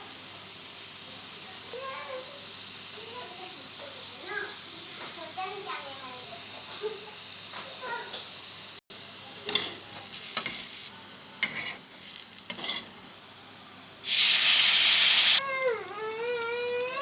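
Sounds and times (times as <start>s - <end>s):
food sizzling in pan: 0.0s - 15.6s
spoon scraping and stirring pan: 9.4s - 13.1s
child crying: 15.4s - 17.0s.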